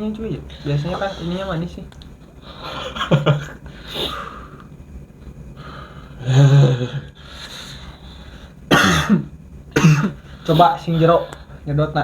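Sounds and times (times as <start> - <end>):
breathy inhales and exhales: 3.6 - 4.8, 5.5 - 8.7.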